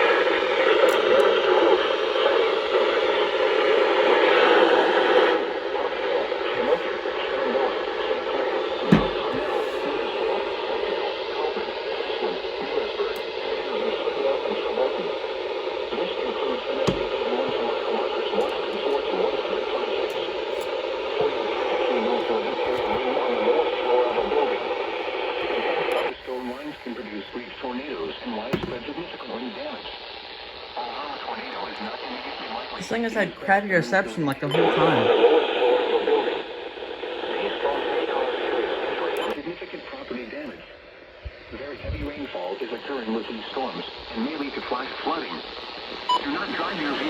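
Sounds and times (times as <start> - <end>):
radio static hiss: 0.0 - 47.0
garbled broadcast voice: 21.3 - 29.5, 31.1 - 35.2.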